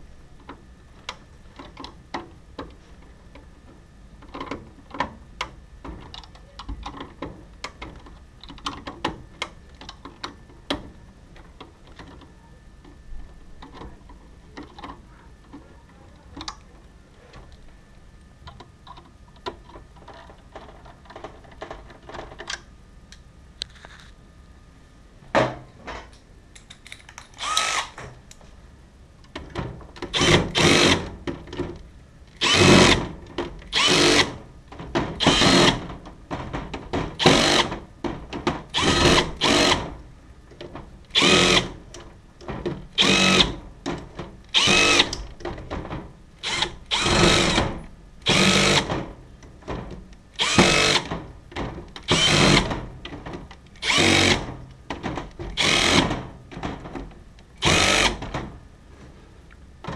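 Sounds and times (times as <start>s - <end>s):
power drill motor whine: 27.4s - 28.0s, 32.4s - 33.0s, 33.7s - 34.4s, 35.2s - 35.8s, 38.8s - 39.9s, 41.2s - 41.7s, 43.0s - 43.5s, 44.6s - 45.2s, 46.4s - 47.6s, 48.3s - 48.9s, 50.4s - 51.1s, 52.1s - 52.7s, 53.8s - 54.5s, 55.6s - 56.1s, 57.6s - 58.2s.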